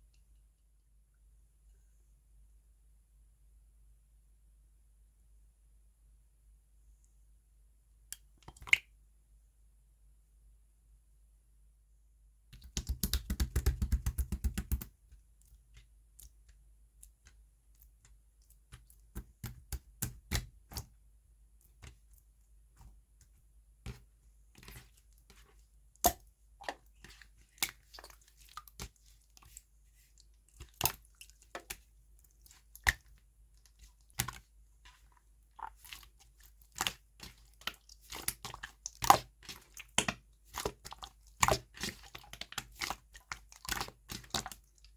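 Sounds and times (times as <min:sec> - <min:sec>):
slime sticky pops and clicks: 0:12.6 - 0:14.9.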